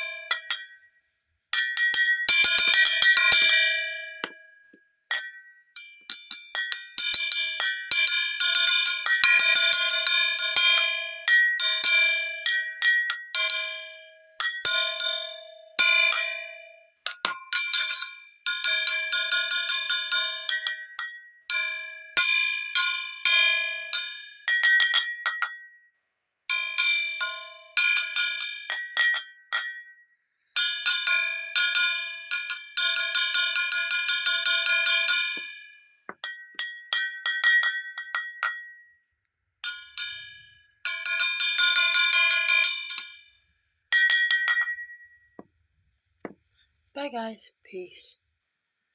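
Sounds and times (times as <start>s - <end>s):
glass bottles struck ringing: 0.0s - 0.9s, 1.6s - 25.8s, 26.5s - 45.6s.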